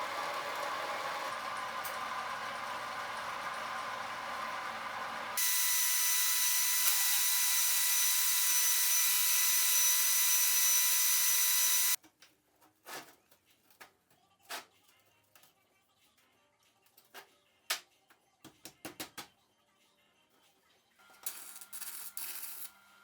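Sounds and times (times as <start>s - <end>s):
power tool whining on metal: 0.0s - 12.0s.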